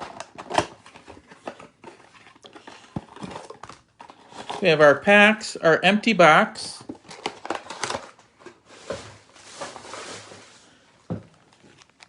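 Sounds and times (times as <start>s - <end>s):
foil packs rustling: 7.0s - 12.0s.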